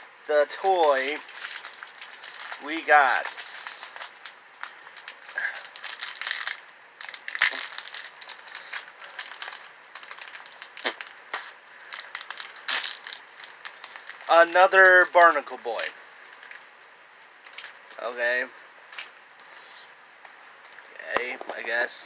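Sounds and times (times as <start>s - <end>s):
toy wrapping crinkling: 0.6s - 18.0s.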